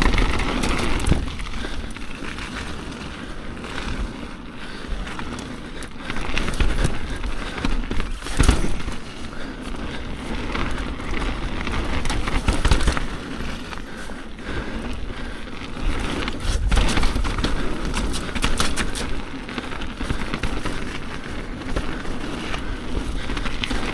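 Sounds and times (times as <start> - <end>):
bike knocking and rattling: 0.0 - 23.9
bike tyres rolling over dirt: 0.0 - 23.9.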